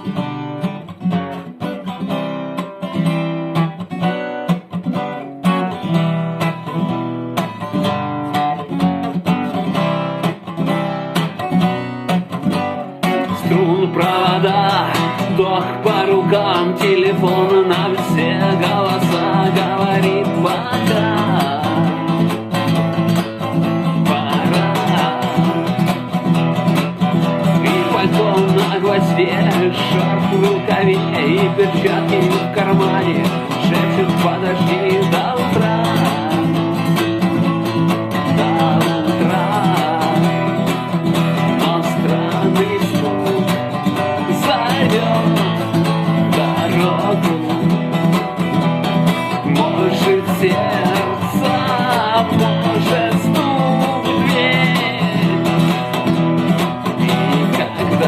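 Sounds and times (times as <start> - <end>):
guitar strumming: 0.0 - 58.0
person singing a word: 13.2 - 22.4, 24.0 - 26.0, 27.5 - 36.6, 56.9 - 58.0.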